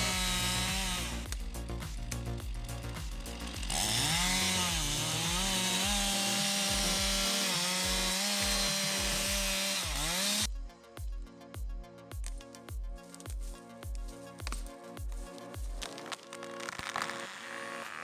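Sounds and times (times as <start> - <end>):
chainsaw cutting wood: 0.0 - 1.3, 3.1 - 10.5
background music bass beat: 0.0 - 16.1.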